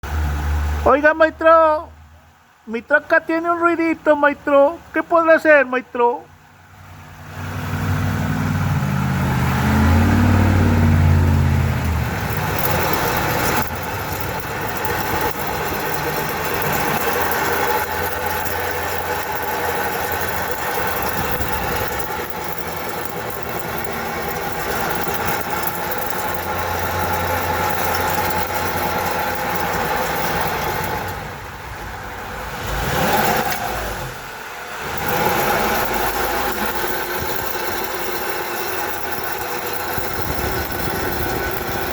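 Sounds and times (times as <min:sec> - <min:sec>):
car driving with low drone: 0:06.7 - 0:14.8.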